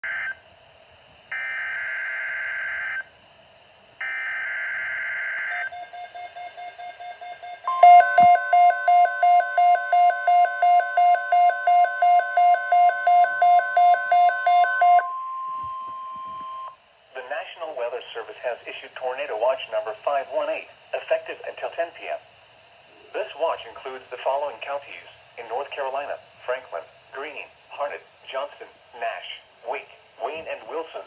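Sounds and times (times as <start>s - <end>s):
steady warning tone: 5.3s - 16.8s
alarm beeping: 5.4s - 16.8s.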